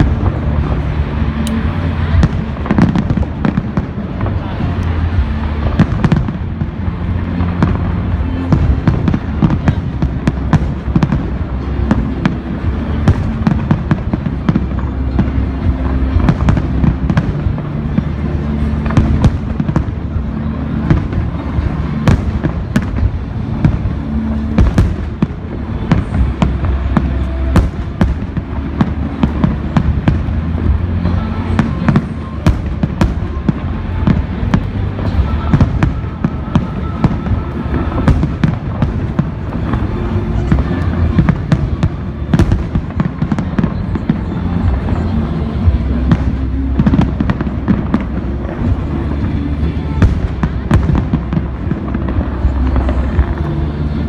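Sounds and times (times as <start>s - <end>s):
fireworks bangs and crackling: 0.0s - 54.0s
steady low held tones: 0.0s - 54.0s.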